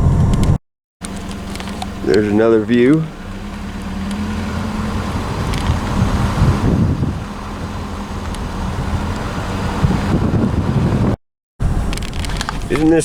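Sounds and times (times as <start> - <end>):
car engine hum: 0.0 - 13.0
road and tyre noise: 0.0 - 13.0.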